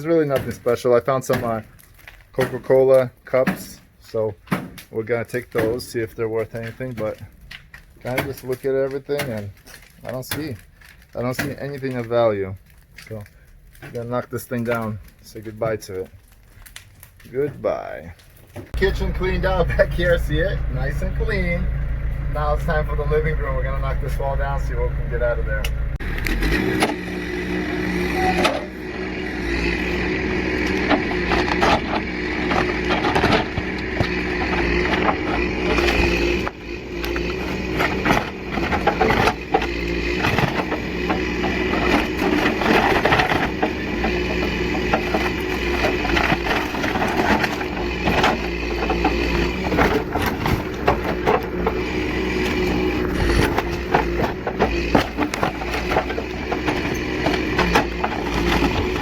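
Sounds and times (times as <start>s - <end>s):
wood breaking and crashing: 0.0s - 59.0s
heavy machine engine running: 18.8s - 59.0s.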